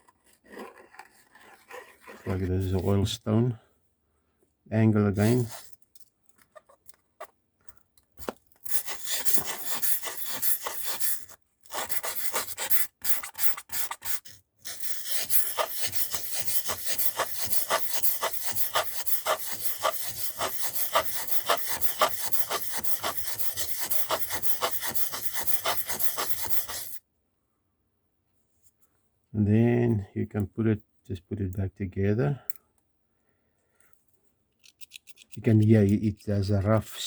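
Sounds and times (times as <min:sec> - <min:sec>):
blade scraping on sharpening stone: 0:08.7 - 0:27.0.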